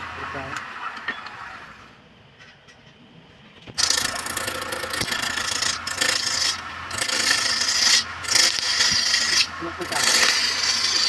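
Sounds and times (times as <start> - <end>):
lathe humming: 3.8 - 11.0
wood scraping on lathe: 3.8 - 11.0.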